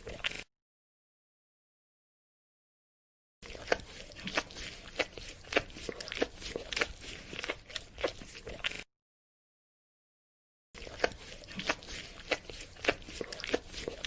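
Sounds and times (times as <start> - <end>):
dog licking and slurping: 3.4 - 8.8, 10.8 - 14.0.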